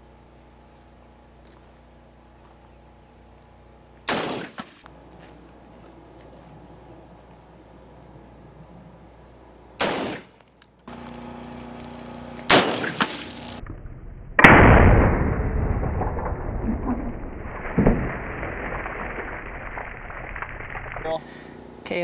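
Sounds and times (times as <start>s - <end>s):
rifle shots: 4.1s - 4.7s, 9.8s - 10.4s, 12.5s - 13.1s.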